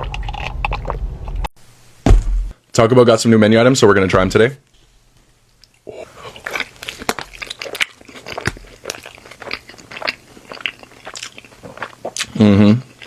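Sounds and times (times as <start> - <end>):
person chewing crunchy food: 0.0 - 1.4, 5.6 - 13.0.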